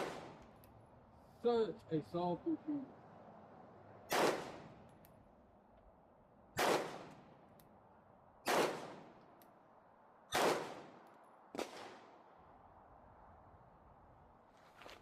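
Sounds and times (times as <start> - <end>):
pistol shots echoing: 4.1 - 4.7, 6.6 - 7.2, 8.4 - 9.2, 10.3 - 11.0.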